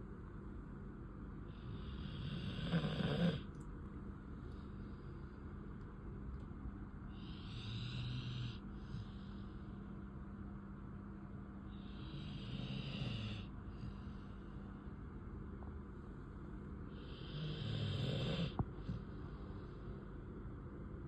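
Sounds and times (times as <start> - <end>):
dog snoring: 1.5 - 3.5, 7.1 - 9.4, 11.7 - 14.3, 16.9 - 19.2.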